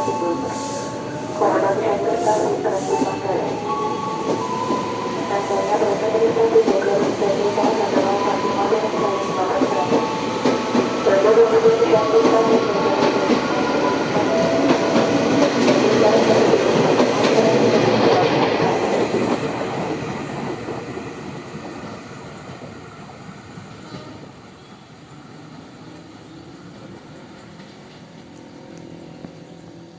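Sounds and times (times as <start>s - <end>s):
train wheels rumbling and clattering: 0.0s - 24.4s, 25.4s - 29.9s
train horn: 23.8s - 24.9s.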